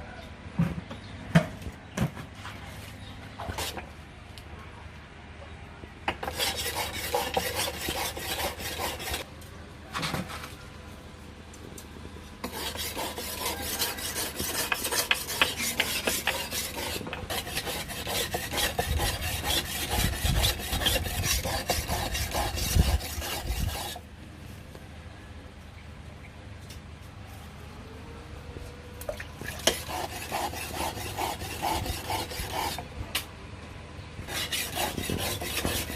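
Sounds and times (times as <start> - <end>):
file rasping against steel blade: 6.2 - 9.2, 12.4 - 24.0, 29.6 - 32.8, 34.3 - 35.9.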